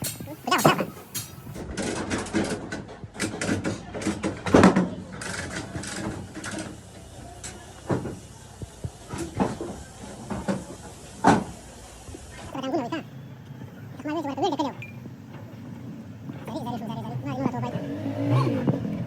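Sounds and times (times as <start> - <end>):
irregular knocks and clicks: 0.0 - 1.6.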